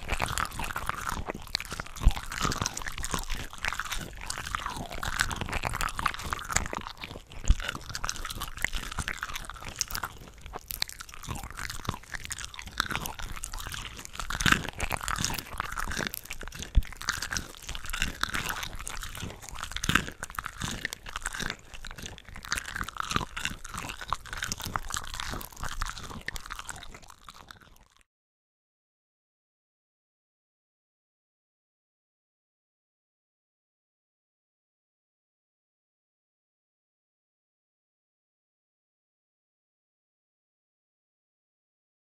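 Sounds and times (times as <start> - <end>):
chewing crunchy shrimp: 0.0 - 28.0.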